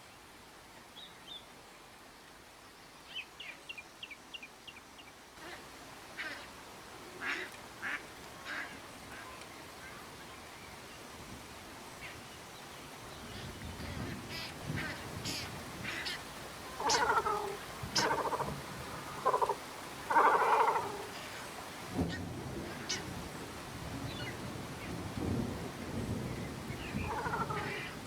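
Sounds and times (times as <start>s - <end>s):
faint steady hiss: 0.0s - 28.0s
harsh rasping bird calls: 14.3s - 21.5s, 27.0s - 28.0s.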